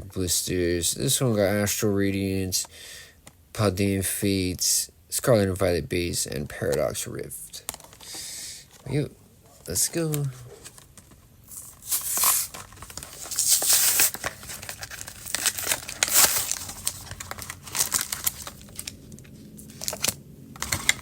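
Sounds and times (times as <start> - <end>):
plastic blister pack tearing: 10.0 - 21.0.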